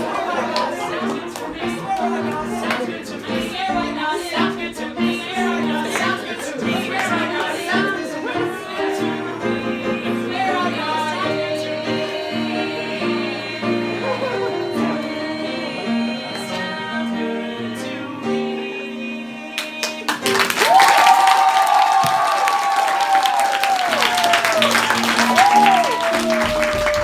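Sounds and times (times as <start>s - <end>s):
group of voices singing: 0.0s - 20.8s.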